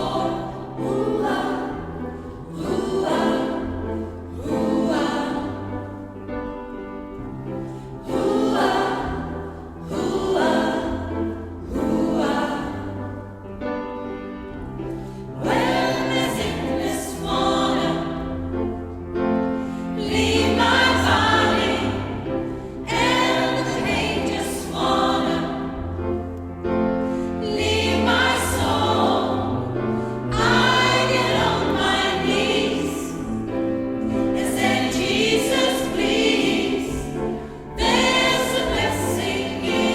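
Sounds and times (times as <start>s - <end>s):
gospel choir singing: 0.0s - 39.9s
low held accompaniment notes: 0.0s - 39.9s.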